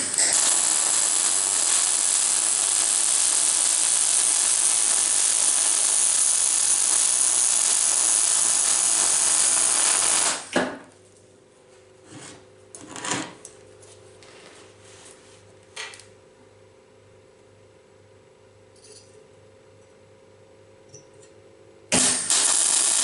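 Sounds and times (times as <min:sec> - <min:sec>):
electric welder hissing: 0:00.0 - 0:10.6, 0:21.9 - 0:23.0.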